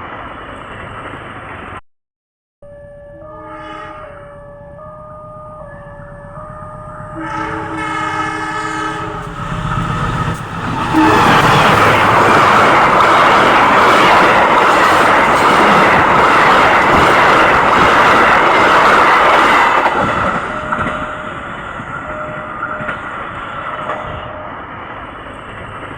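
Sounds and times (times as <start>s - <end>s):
train horn: 3.0s - 9.4s, 10.6s - 12.4s
train wheels on rails: 7.7s - 25.9s.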